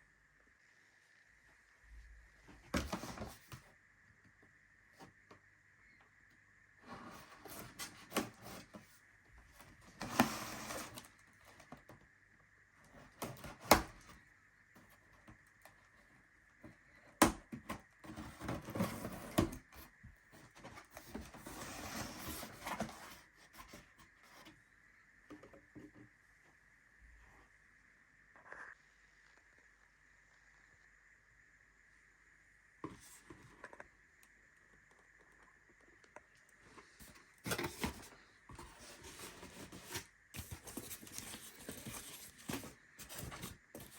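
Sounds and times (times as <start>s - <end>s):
faint steady high whine: 0.0s - 43.9s
packaging rustling and scraping: 6.9s - 9.0s, 9.6s - 11.8s, 17.6s - 24.5s, 36.6s - 43.9s.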